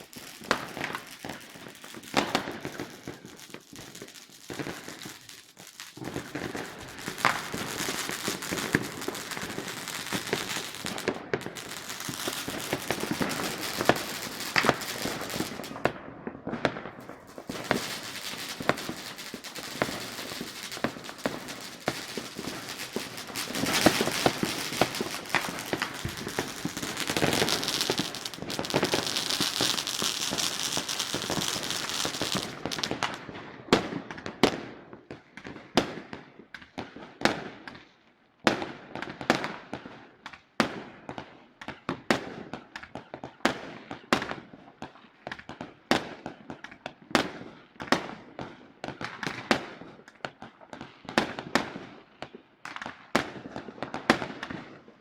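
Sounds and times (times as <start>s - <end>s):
fireworks crackling: 0.0s - 33.4s
fireworks bangs: 0.0s - 34.6s.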